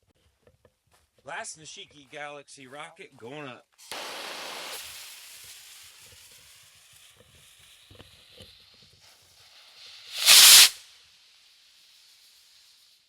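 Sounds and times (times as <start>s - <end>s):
firework rocket launch hiss: 3.8s - 13.0s
firework shell booming: 10.1s - 10.8s.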